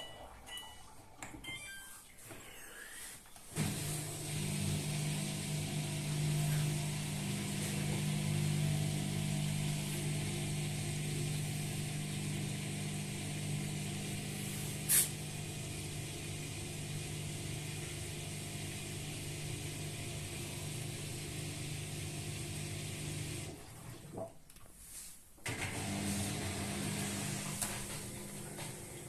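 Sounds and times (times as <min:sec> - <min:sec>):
washing machine humming: 0:00.0 - 0:02.3, 0:03.4 - 0:24.3, 0:25.4 - 0:29.0
short hiss: 0:14.6 - 0:15.2.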